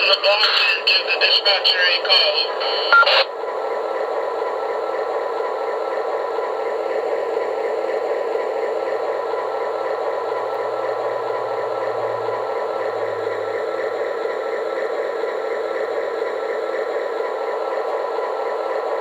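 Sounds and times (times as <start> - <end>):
diesel locomotive engine through speaker: 0.0 - 19.0.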